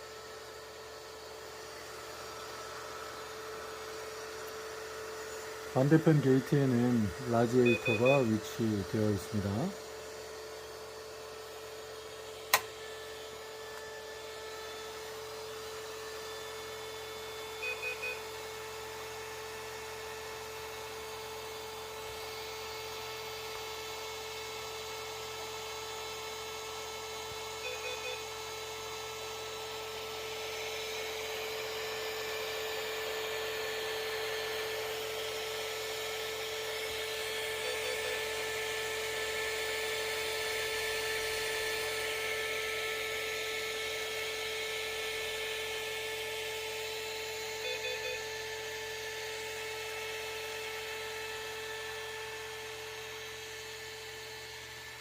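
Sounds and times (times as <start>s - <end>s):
electric motors whining: 0.0s - 55.0s
short triple beeps: 7.7s - 8.2s.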